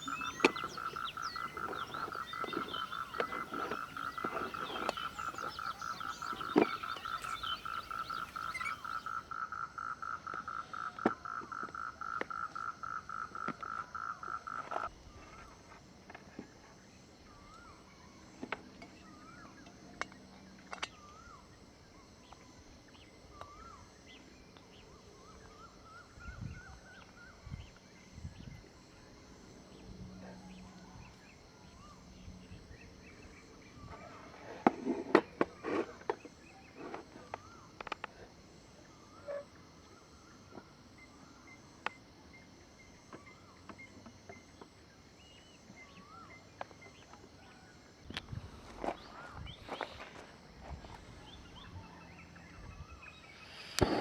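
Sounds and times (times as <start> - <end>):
faint wavering chirps: 0.0 - 9.2
frog pulsed trill: 0.0 - 9.2.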